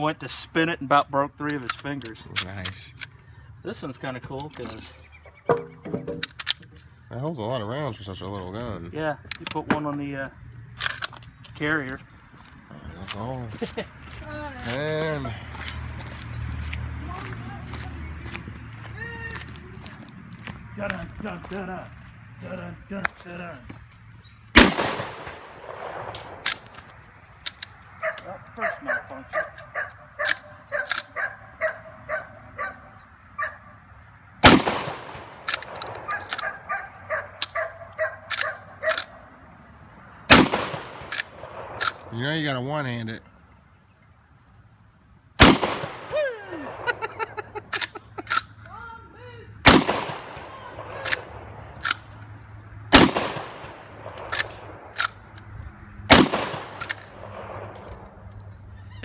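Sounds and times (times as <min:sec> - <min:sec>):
shotgun lever metallic clacks: 0:01.4 - 0:03.2, 0:04.3 - 0:06.9, 0:10.8 - 0:11.2, 0:24.6 - 0:28.3, 0:29.4 - 0:31.2, 0:34.4 - 0:39.2, 0:40.3 - 0:42.1, 0:47.7 - 0:48.6, 0:51.0 - 0:52.3, 0:53.0 - 0:55.5, 0:56.1 - 0:57.1
shotgun shot: 0:24.6 - 0:26.6, 0:34.4 - 0:36.6, 0:40.3 - 0:42.1, 0:45.4 - 0:46.9, 0:49.6 - 0:51.6, 0:52.9 - 0:54.9, 0:56.1 - 0:58.0
dog barking: 0:28.0 - 0:33.7, 0:36.1 - 0:39.2.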